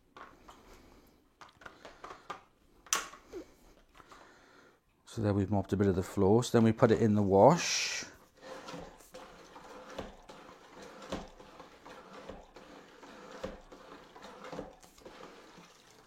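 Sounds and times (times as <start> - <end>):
mop scraping plastic bucket: 6.8 - 16.0.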